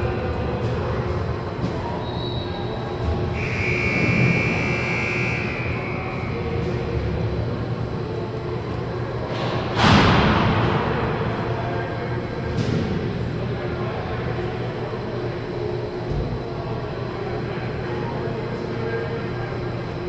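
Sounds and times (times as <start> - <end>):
low arena rumble: 0.0 - 20.0
referee's whistle: 3.4 - 6.3.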